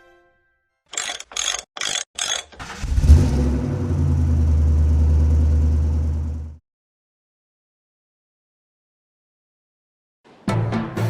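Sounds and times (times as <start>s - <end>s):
car engine starting and idling: 2.5s - 6.6s.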